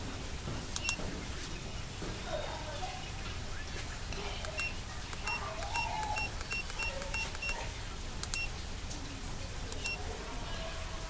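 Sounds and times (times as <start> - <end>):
electronic keypad beeps: 0.8 - 1.0, 4.1 - 7.6, 8.2 - 8.5.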